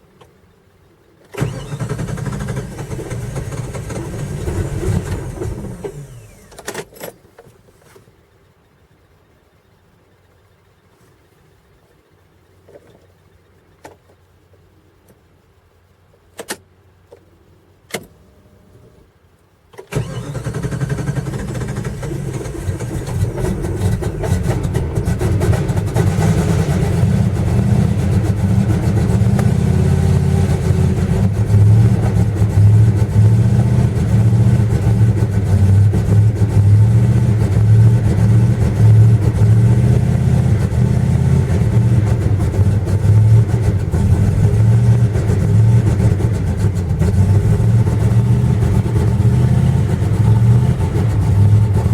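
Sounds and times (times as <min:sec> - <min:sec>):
car engine starting and running: 0:01.2 - 0:06.9, 0:19.8 - 0:51.9.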